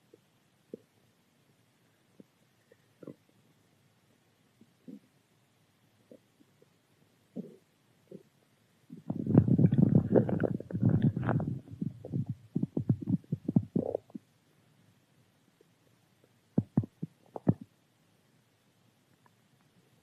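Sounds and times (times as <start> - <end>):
stomach growling: 2.2 - 3.4, 7.3 - 8.3, 8.9 - 14.3, 16.6 - 17.7.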